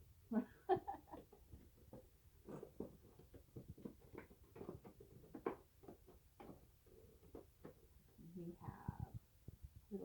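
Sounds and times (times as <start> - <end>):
cardboard and paper rustling: 1.4 - 8.2.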